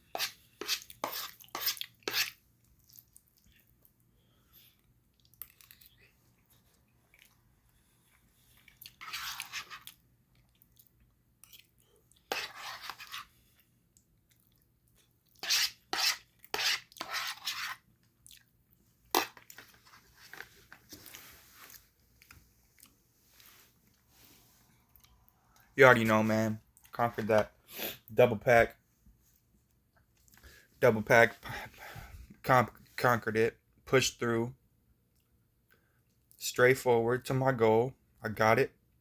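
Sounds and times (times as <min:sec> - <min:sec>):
person chewing noodles: 0:00.8 - 0:12.3, 0:13.4 - 0:15.4, 0:17.9 - 0:19.7, 0:21.0 - 0:25.7.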